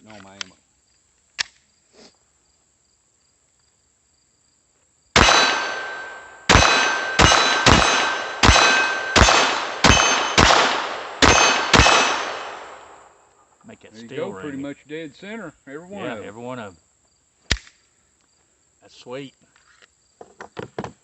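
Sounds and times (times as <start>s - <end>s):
pistol shots: 5.2s - 13.1s
steel target ringing: 5.2s - 13.1s.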